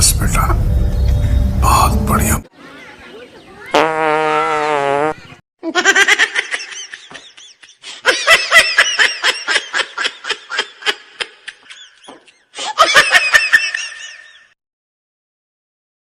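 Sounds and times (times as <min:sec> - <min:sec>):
high-pitched laughter: 0:05.6 - 0:14.6.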